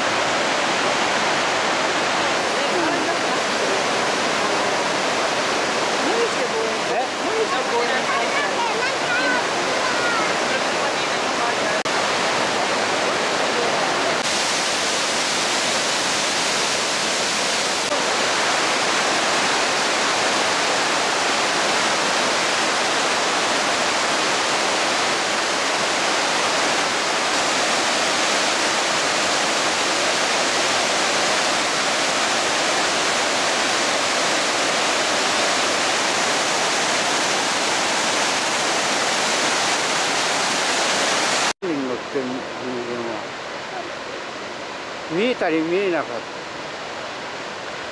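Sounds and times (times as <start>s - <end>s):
waterfall roaring: 0.0s - 47.9s.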